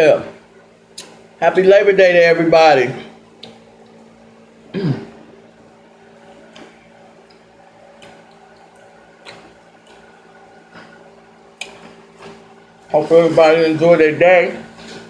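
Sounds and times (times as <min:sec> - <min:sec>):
chewing mouth smacks: 0:00.9 - 0:01.2, 0:03.4 - 0:04.0, 0:06.5 - 0:11.0, 0:11.6 - 0:12.5.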